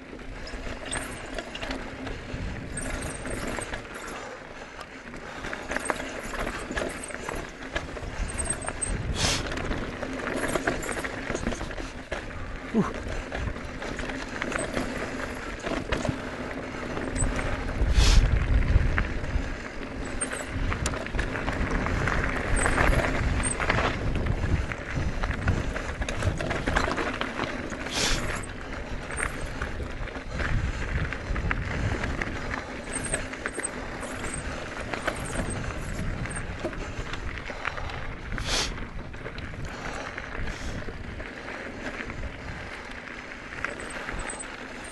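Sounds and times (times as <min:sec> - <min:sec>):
bike tyres on dirt trail: 0:00.0 - 0:44.9
chain and frame rattling: 0:00.0 - 0:44.9
wind on microphone: 0:07.7 - 0:10.0, 0:17.2 - 0:27.0, 0:28.1 - 0:41.2
person sniffing: 0:38.4 - 0:38.8.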